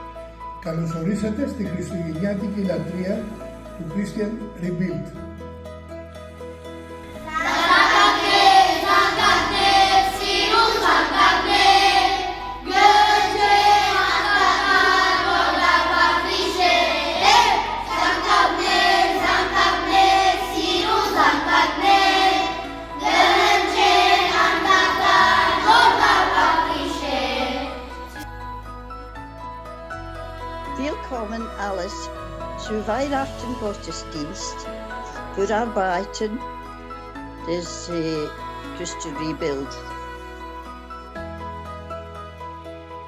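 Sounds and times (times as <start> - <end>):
musical accompaniment: 0.0 - 43.0
children singing: 7.2 - 28.2.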